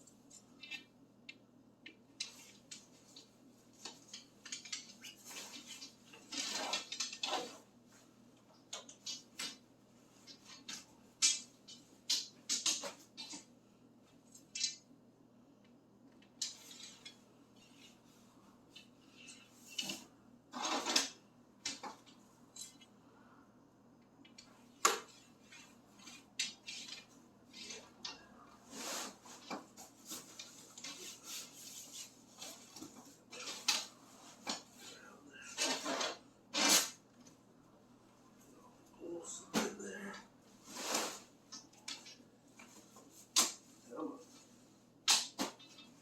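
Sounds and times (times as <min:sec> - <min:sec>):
metal poles clinking and knocking: 0:01.9 - 0:07.6, 0:10.2 - 0:13.5, 0:14.3 - 0:14.9, 0:16.3 - 0:18.0, 0:24.3 - 0:28.3.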